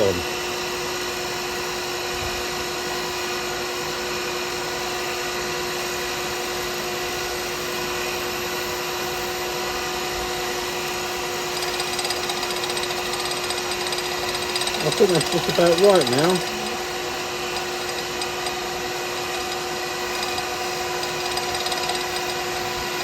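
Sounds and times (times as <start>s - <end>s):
lathe running: 10.8s - 23.0s
turning tool cutting wood: 11.4s - 23.0s.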